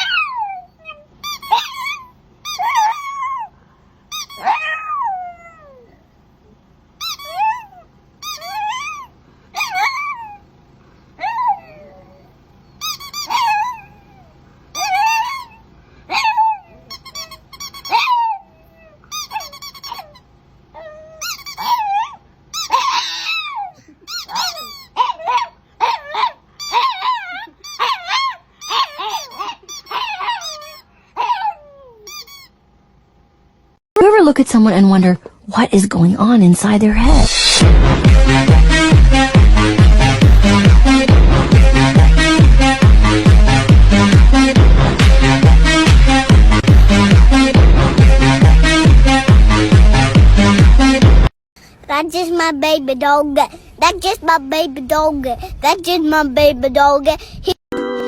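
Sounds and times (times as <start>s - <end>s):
puppy whining and yipping: 0.0s - 3.5s, 4.1s - 6.0s, 7.0s - 10.5s, 11.2s - 32.6s.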